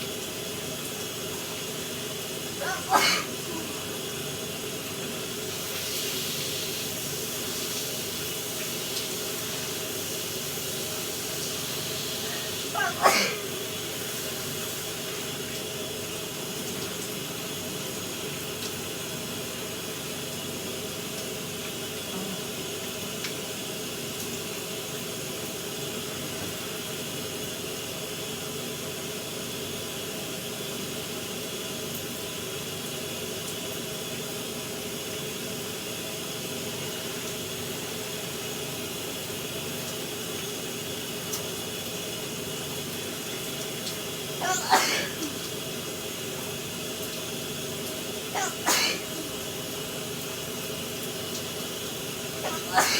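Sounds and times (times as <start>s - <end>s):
shower water spray hissing: 0.0s - 19.0s, 36.6s - 52.9s.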